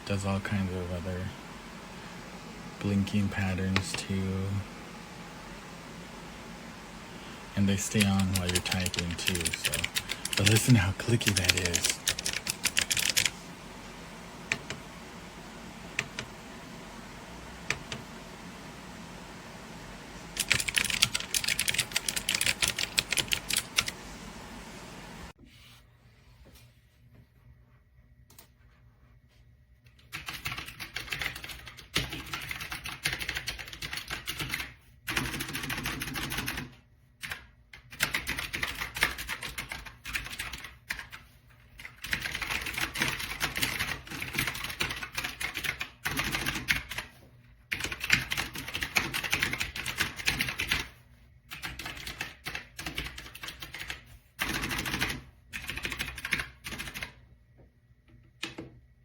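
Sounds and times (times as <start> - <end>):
mechanical keyboard typing: 7.6 - 13.4, 20.4 - 24.0, 30.0 - 41.2, 41.8 - 47.1, 47.7 - 50.9, 51.5 - 57.2.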